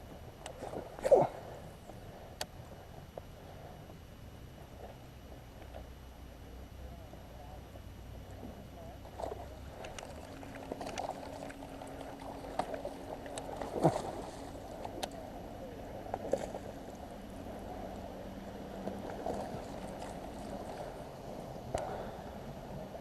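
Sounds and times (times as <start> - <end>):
faint steady hum: 0.0 - 23.0.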